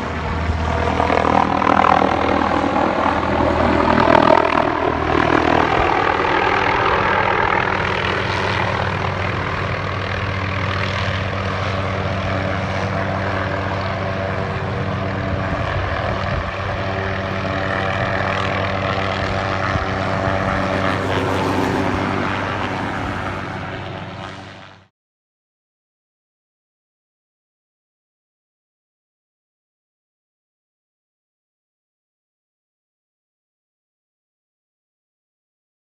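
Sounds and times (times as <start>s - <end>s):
helicopter rotor and turbine hum: 0.0s - 24.9s.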